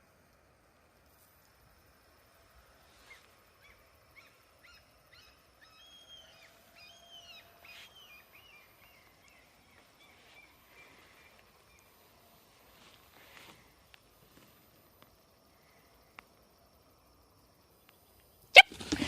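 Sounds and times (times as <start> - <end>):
outdoor background noise: 0.0 - 19.0
bird chirping: 3.0 - 12.4.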